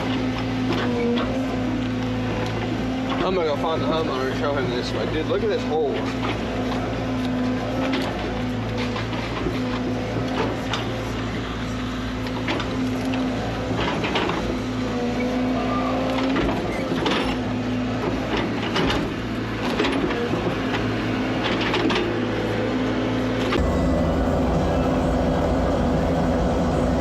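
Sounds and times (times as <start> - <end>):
excavator engine running: 23.6 - 27.0.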